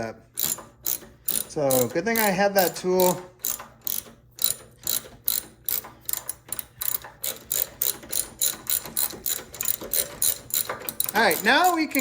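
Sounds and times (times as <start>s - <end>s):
ratchet wrench clicking: 0.4s - 12.0s.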